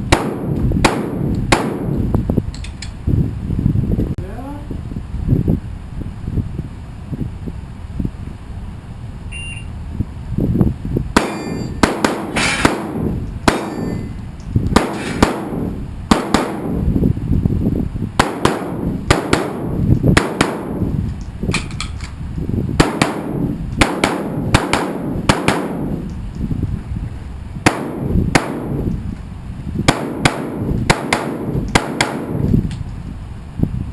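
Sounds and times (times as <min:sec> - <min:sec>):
shotgun shots: 0:00.0 - 0:02.0, 0:11.2 - 0:14.0, 0:14.7 - 0:16.8, 0:18.2 - 0:20.9, 0:22.8 - 0:26.0, 0:27.6 - 0:28.9, 0:29.9 - 0:32.5.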